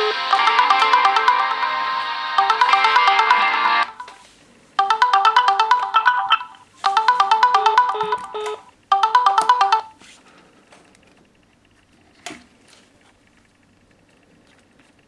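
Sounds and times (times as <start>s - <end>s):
phone ringtone melody: 0.0s - 10.0s.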